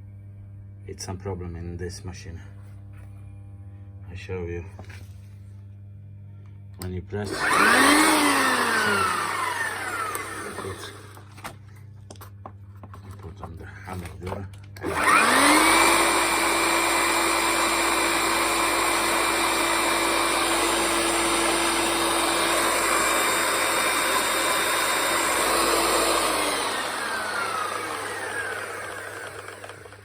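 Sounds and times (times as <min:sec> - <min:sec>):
rotary hammer drill motor running: 0:07.2 - 0:11.7, 0:14.0 - 0:30.0.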